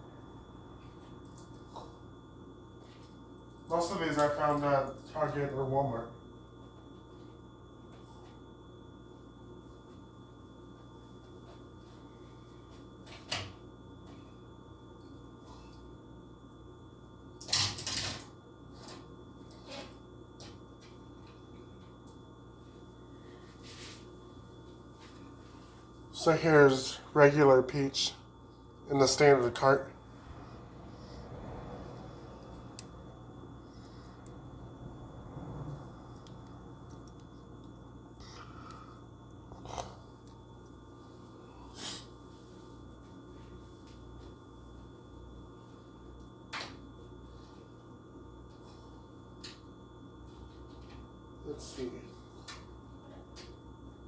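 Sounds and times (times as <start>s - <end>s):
steady low hum: 0.0s - 54.0s
person sniffing: 41.6s - 42.1s.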